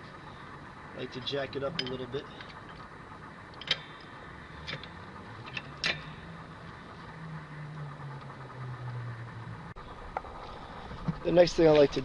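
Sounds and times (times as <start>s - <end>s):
car jack clicking: 3.5s - 6.7s.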